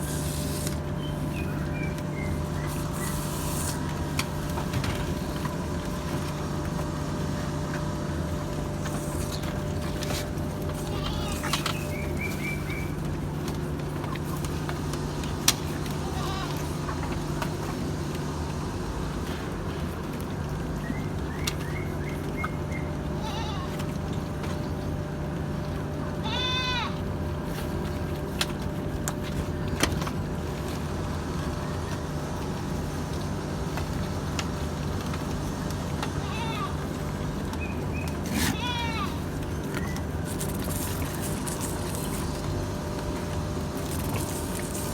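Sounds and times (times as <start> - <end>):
steady low hum: 0.0 - 44.9
goat bleating: 10.7 - 11.8, 15.9 - 16.7, 23.2 - 23.8, 26.2 - 27.0, 36.2 - 36.8, 38.3 - 39.4.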